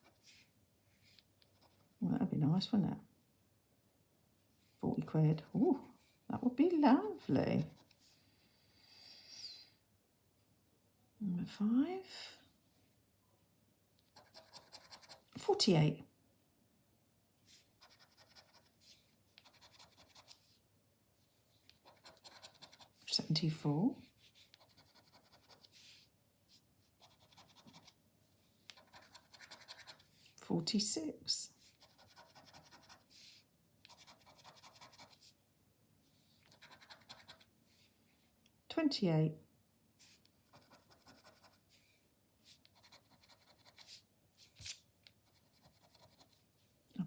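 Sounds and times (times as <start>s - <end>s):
scratching scratch card: 14.1s - 15.3s, 17.8s - 20.4s, 21.7s - 23.0s, 24.3s - 26.0s, 27.0s - 28.0s, 28.6s - 30.1s, 31.7s - 35.4s, 36.4s - 37.5s, 42.6s - 46.4s.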